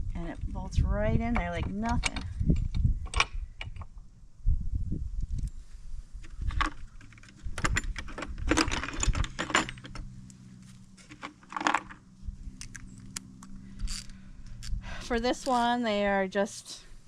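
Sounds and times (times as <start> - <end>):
small metal parts clinking: 6.5 - 10.4, 11.0 - 15.8.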